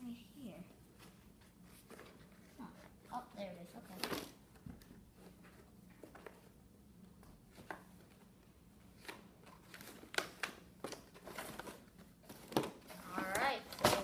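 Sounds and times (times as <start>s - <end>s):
low steady hum: 0.0s - 14.0s
packaging clicks and rustles: 9.0s - 14.0s.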